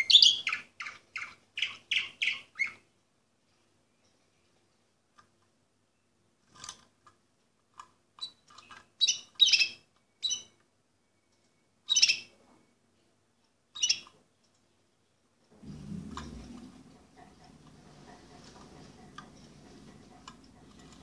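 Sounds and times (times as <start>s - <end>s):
canary chirping: 0.0s - 2.9s, 8.2s - 12.4s, 13.7s - 14.2s.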